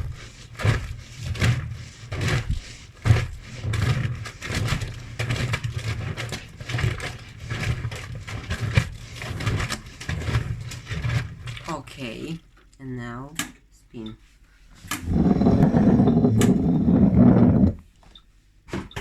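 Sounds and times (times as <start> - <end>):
washing machine drum churning: 0.0 - 12.4, 14.8 - 17.8
low motor hum: 14.9 - 17.8.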